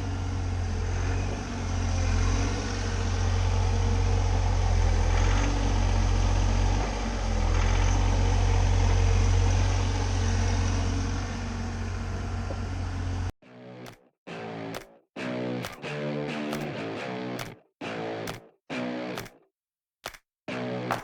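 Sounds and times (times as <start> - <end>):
excavator diesel engine droning: 0.0 - 13.3.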